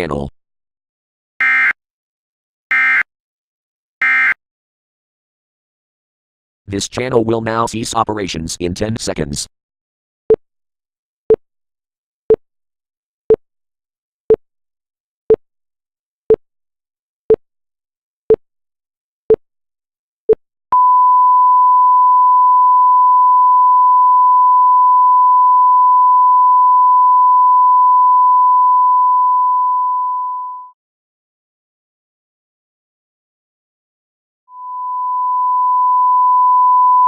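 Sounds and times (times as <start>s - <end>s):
sine test tone: 20.8s - 30.8s, 34.5s - 37.0s.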